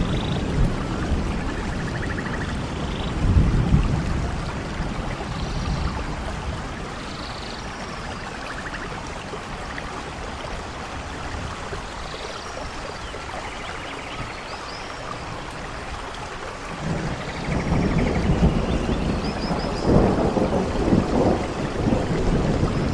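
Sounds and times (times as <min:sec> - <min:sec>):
thunder rumble: 0:00.0 - 0:07.1, 0:16.7 - 0:22.9
steady rain: 0:00.0 - 0:22.9.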